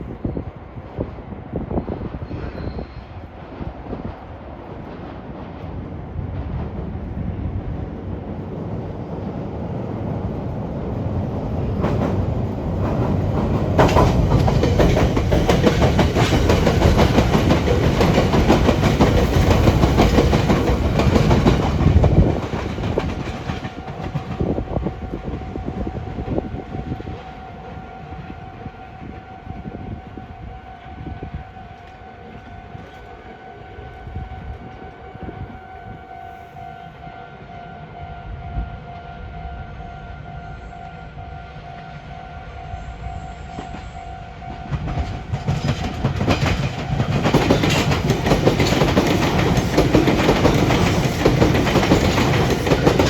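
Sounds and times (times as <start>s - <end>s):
train wheels clattering over rails: 11.6s - 25.0s, 43.6s - 53.0s.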